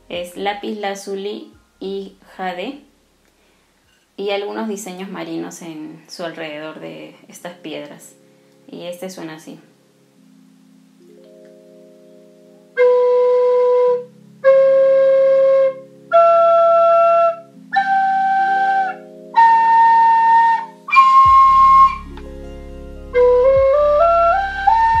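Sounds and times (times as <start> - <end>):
short breaths: 3.3 - 4.0
ceramic wind instrument scale: 12.8 - 22.3, 23.1 - 25.0.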